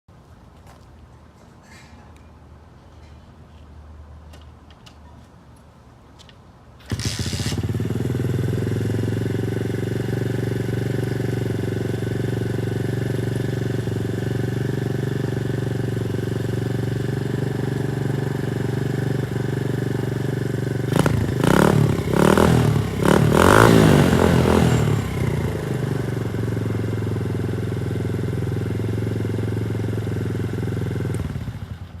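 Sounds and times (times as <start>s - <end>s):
motorbike engine idling and revving: 6.8s - 32.0s.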